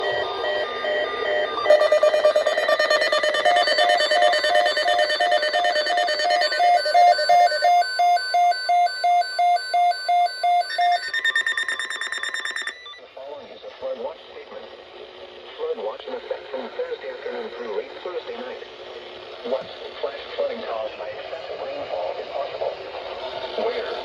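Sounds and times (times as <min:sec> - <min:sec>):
electronic alarm beeping: 0:00.0 - 0:13.0
steady alert tones: 0:00.0 - 0:13.0.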